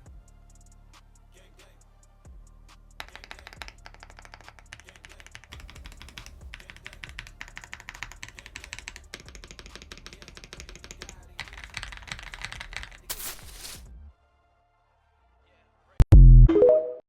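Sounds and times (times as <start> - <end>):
background music: 0.0 - 17.0
mechanical keyboard typing: 3.0 - 13.7.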